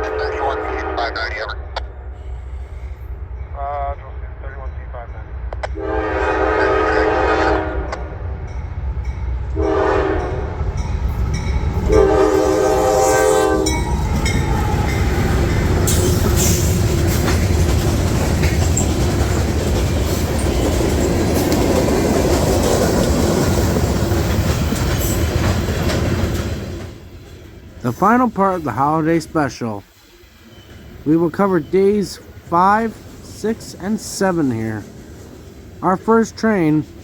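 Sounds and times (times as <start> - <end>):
locomotive horn blasts: 0.0 - 1.5, 5.7 - 8.1, 9.6 - 10.6, 11.8 - 13.8
train rumble: 0.0 - 37.0
wheels clacking over rail joints: 13.7 - 27.0.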